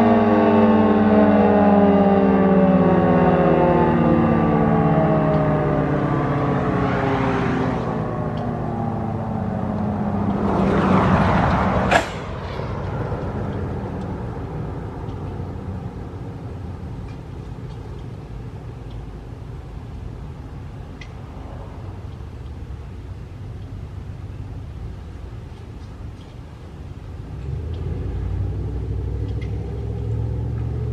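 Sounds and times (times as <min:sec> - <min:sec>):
warning siren winding down: 0:00.0 - 0:20.6
low outdoor rumble: 0:00.0 - 0:30.9.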